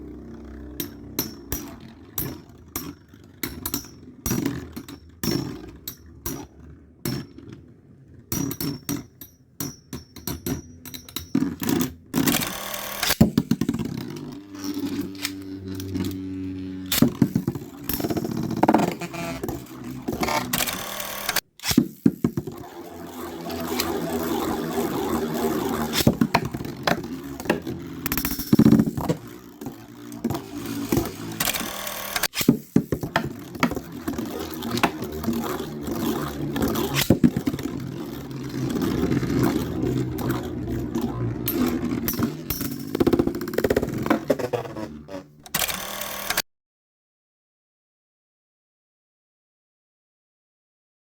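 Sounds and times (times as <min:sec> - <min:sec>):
spinning tops whirring and scraping: 0:00.0 - 0:46.4
tops clacking together: 0:23.4 - 0:45.7.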